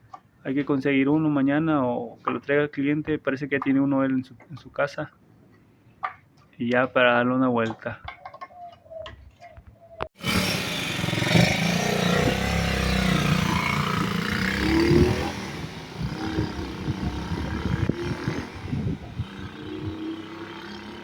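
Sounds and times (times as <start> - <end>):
motorcycle engine running: 10.2 - 21.0.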